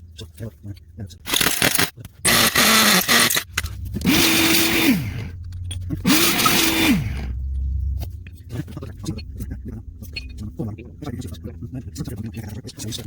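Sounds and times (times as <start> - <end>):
hammer drill boring into concrete: 1.3 - 5.3, 6.1 - 7.3.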